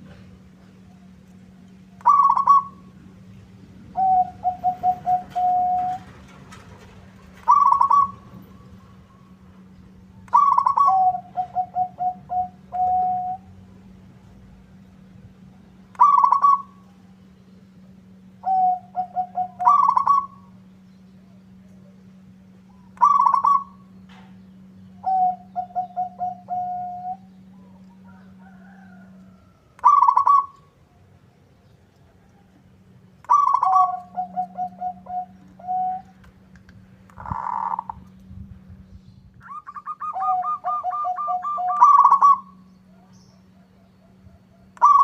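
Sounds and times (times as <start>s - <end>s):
faint low hum: 0.0s - 45.0s
dove cooing: 1.9s - 3.0s, 3.9s - 9.5s, 10.1s - 14.0s, 15.9s - 17.1s, 18.4s - 20.7s, 22.6s - 31.2s, 33.2s - 36.2s, 37.1s - 38.1s, 39.4s - 45.0s.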